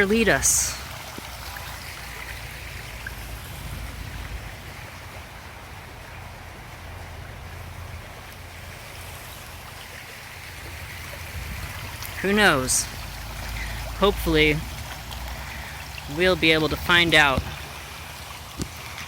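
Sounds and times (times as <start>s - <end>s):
rushing creek water: 0.0s - 19.0s.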